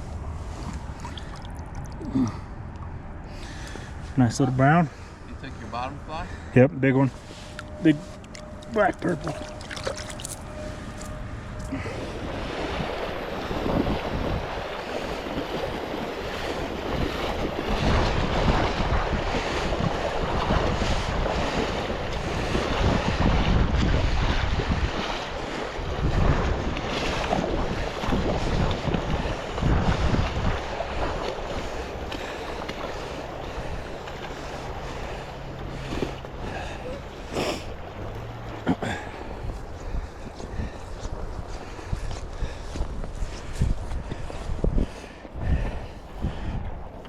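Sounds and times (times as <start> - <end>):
wind buffeting microphone: 0.0 - 47.0
river water rushing: 7.2 - 22.7, 24.6 - 41.0.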